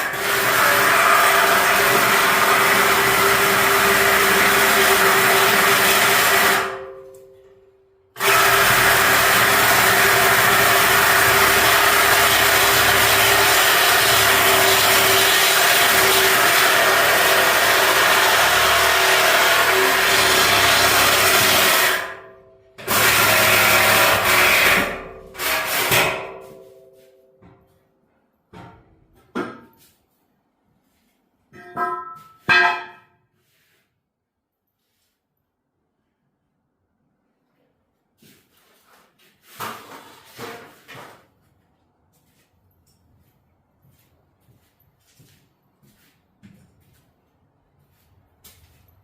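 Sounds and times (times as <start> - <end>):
power grinder grinding steel: 8.2 - 22.2.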